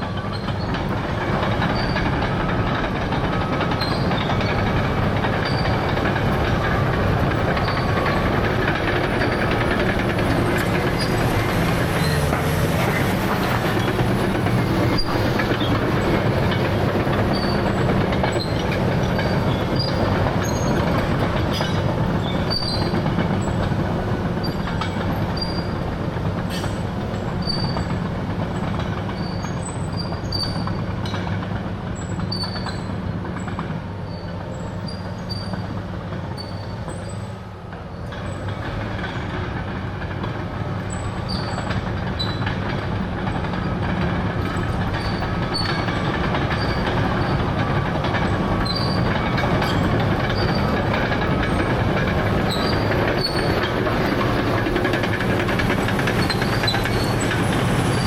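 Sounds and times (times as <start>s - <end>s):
diesel engine running: 0.0s - 58.0s
steel tracks clanking: 0.0s - 58.0s.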